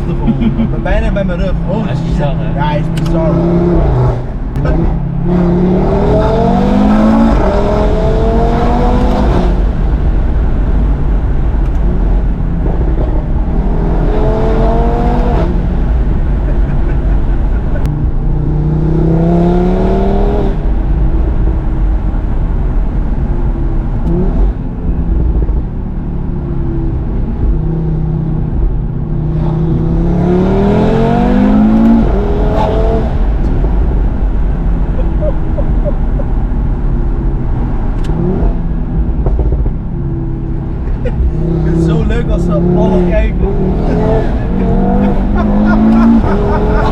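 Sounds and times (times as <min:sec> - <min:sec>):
car engine revving hard: 0:00.0 - 0:20.8, 0:29.2 - 0:36.4, 0:40.5 - 0:46.9.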